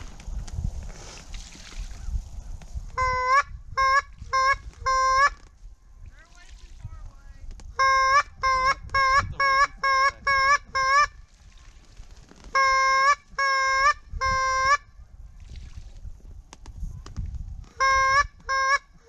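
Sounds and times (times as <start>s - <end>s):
duck call quacks: 3.0s - 5.4s, 7.8s - 11.2s, 12.5s - 14.9s, 17.7s - 19.0s.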